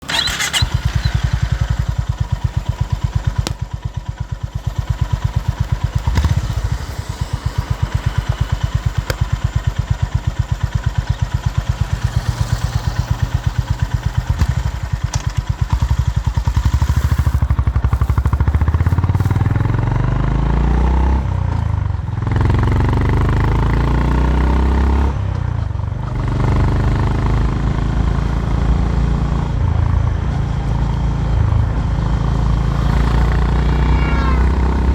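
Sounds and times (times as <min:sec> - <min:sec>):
motorcycle engine thumping: 0:00.0 - 0:12.4, 0:13.0 - 0:20.0.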